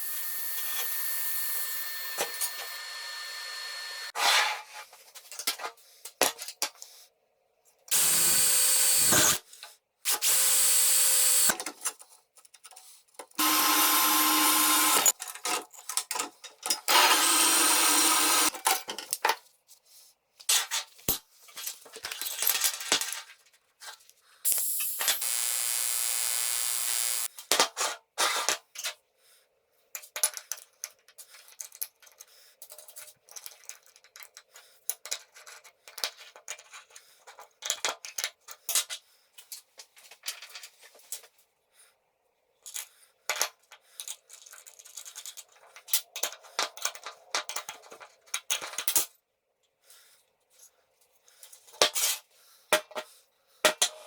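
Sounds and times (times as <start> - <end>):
power tool running: 0.0 - 4.1, 7.9 - 9.4, 10.1 - 11.5, 13.4 - 15.1, 16.9 - 18.5, 24.5 - 27.3.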